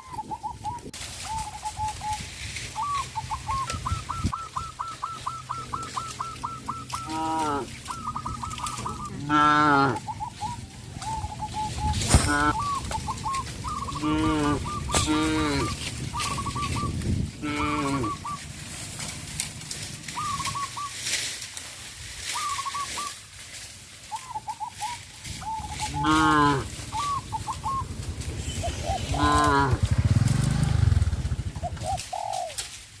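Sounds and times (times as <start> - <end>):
cows mooing: 5.5 - 10.4, 12.0 - 20.6, 25.7 - 31.5.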